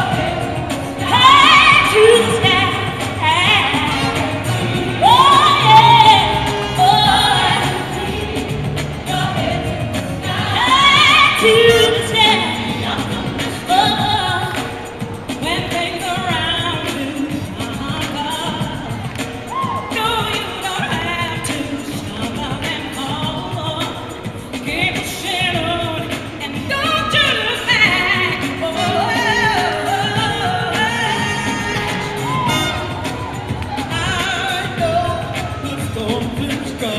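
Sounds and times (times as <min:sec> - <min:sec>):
gospel group singing: 0:00.0 - 0:24.3, 0:25.0 - 0:36.9
band playing: 0:00.0 - 0:36.9
instrumental accompaniment: 0:27.7 - 0:36.9.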